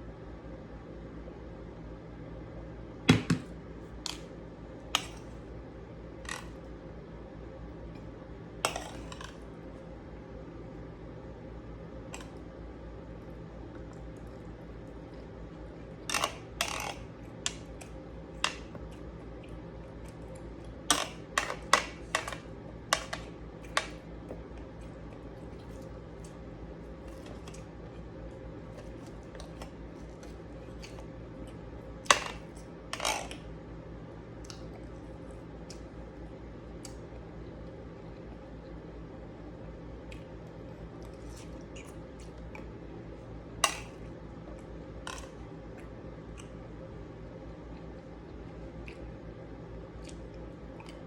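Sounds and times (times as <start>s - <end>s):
steady low hum: 0.0s - 51.0s.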